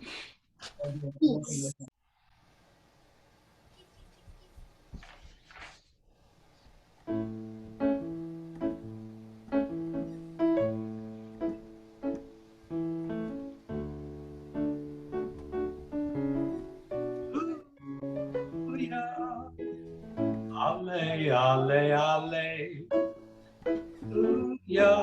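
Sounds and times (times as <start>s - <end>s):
plucked chords instrumental music: 7.2s - 20.6s.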